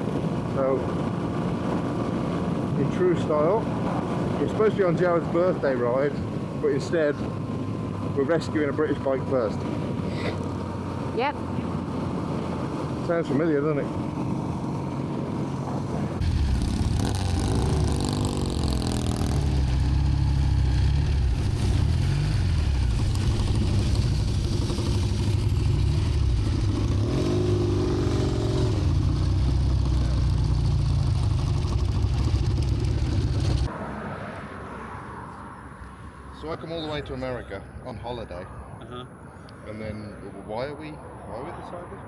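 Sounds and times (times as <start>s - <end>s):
motorcycle engine revving: 6.5s - 33.7s.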